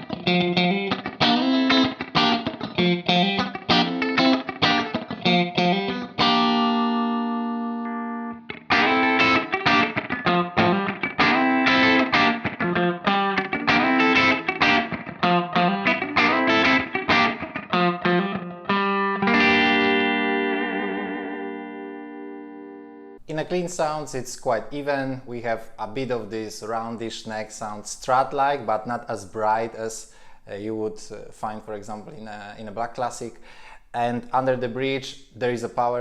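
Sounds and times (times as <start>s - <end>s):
electric guitar funk chord stabs: 0.0s - 23.0s.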